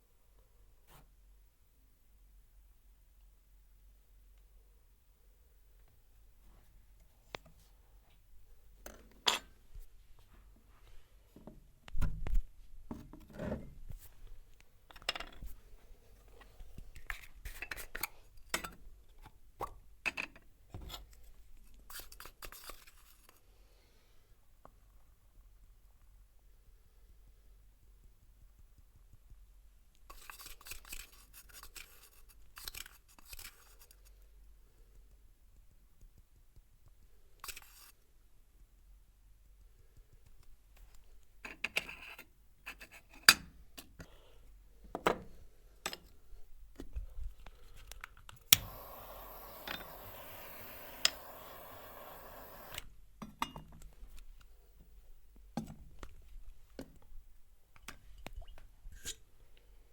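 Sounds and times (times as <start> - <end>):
steady hiss: 48.5 - 52.9.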